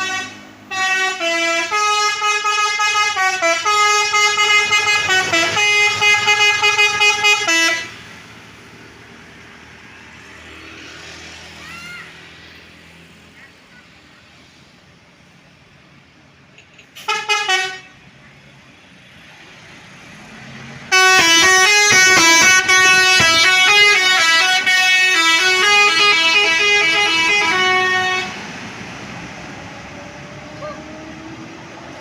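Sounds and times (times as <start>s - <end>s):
musical bus horn melody: 0.0s - 8.1s, 17.0s - 18.0s, 20.9s - 28.5s.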